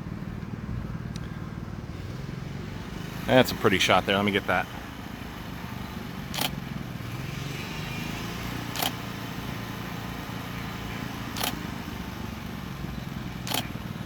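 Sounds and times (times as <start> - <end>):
low mechanical hum: 0.0 - 14.0
short sharp ticks: 8.7 - 9.0, 13.4 - 13.8.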